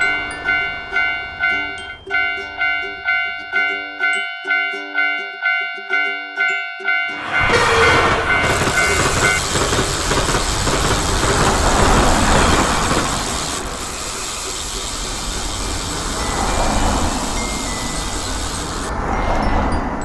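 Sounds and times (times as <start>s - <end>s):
train wheels rumbling on rail: 7.2s - 20.0s.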